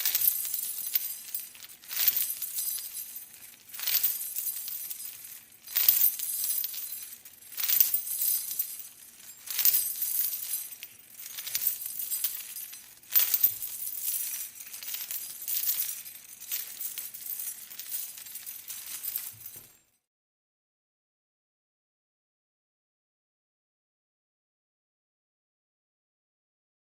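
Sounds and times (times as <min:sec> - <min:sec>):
metal chains jangling: 0:00.0 - 0:20.0.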